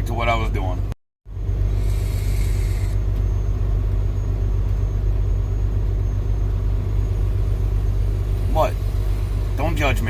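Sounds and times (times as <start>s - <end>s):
diesel truck engine idling: 0.4s - 10.0s
short hiss: 1.8s - 3.0s.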